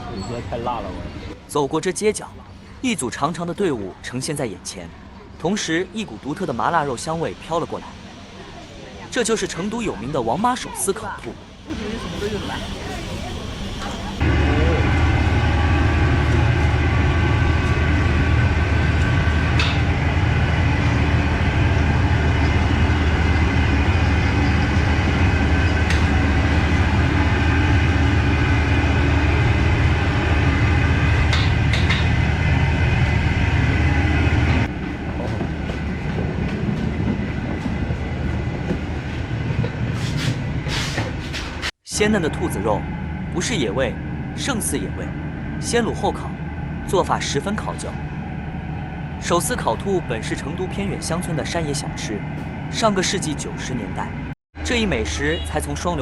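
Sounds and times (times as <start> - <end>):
loud machine hum: 11.5 - 36.1.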